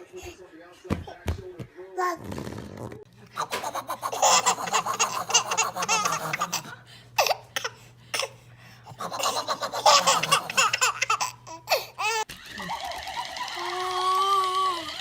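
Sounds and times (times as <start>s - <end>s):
baby laughing: 3.4s - 7.4s, 8.9s - 14.8s.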